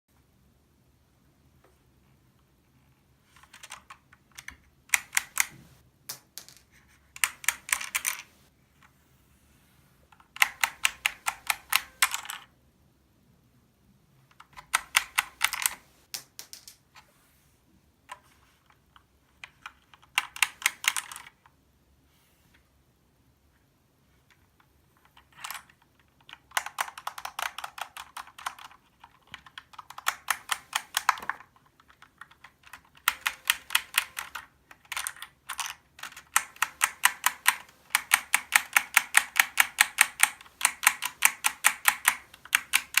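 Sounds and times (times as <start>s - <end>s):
mechanical keyboard typing: 3.4s - 5.7s, 7.2s - 8.3s, 10.3s - 12.5s, 14.4s - 16.7s, 19.4s - 21.4s, 25.2s - 43.0s.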